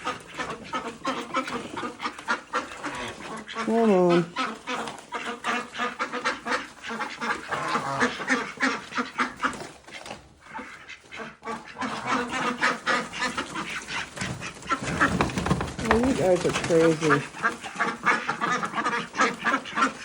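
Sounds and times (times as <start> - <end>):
ducks quacking: 0.0 - 20.0
geese honking: 0.0 - 20.0.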